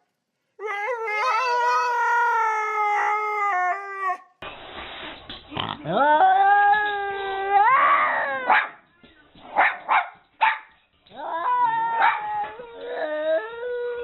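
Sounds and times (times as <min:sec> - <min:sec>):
dog howling: 0:00.6 - 0:04.3, 0:11.2 - 0:14.0
dog barking: 0:08.5 - 0:08.8, 0:09.6 - 0:10.7.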